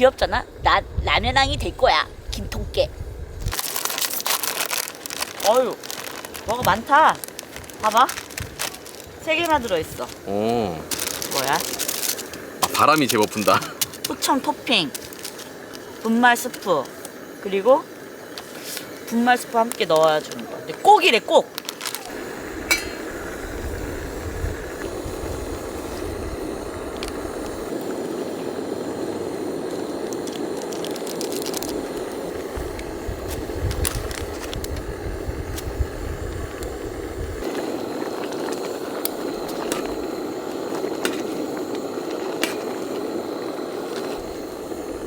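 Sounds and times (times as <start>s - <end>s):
wind buffeting microphone: 0.0s - 3.6s, 22.2s - 30.7s, 31.6s - 42.1s
pot boiling: 0.0s - 45.0s.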